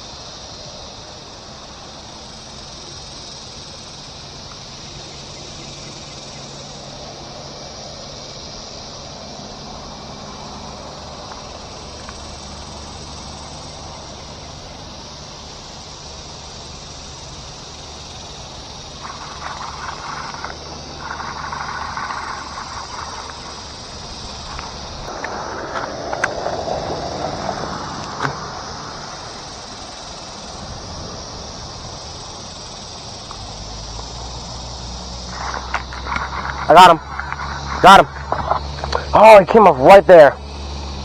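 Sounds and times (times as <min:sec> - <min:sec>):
insect drone: 0:00.0 - 0:41.0
low hum: 0:03.8 - 0:41.0
loud irregular noises: 0:18.8 - 0:26.5, 0:35.2 - 0:40.3.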